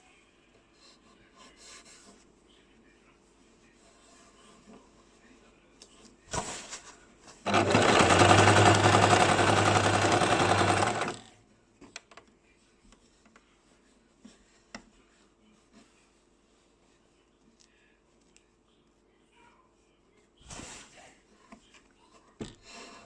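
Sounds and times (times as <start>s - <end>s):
sewing machine stitching: 7.4s - 11.3s.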